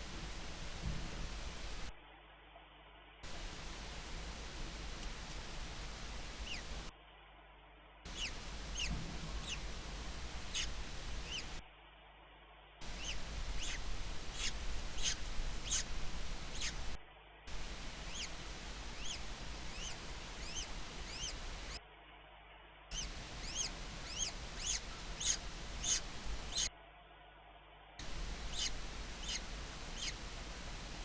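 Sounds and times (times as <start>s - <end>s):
bird chirping: 0.0s - 1.9s, 3.3s - 6.9s, 8.1s - 11.6s, 12.8s - 21.8s, 22.9s - 26.7s, 28.0s - 31.0s
low steady rumble: 0.0s - 2.0s, 3.2s - 7.0s, 8.1s - 11.6s, 12.8s - 21.8s, 22.9s - 26.7s, 28.0s - 31.0s.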